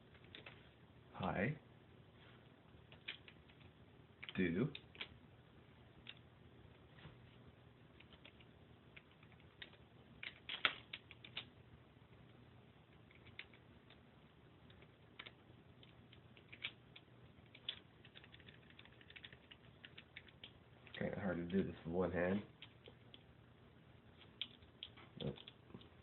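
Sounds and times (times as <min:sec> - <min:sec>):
computer keyboard keystrokes: 0:08.0 - 0:11.5, 0:13.1 - 0:13.6, 0:14.7 - 0:16.8, 0:17.5 - 0:20.6, 0:24.3 - 0:25.9.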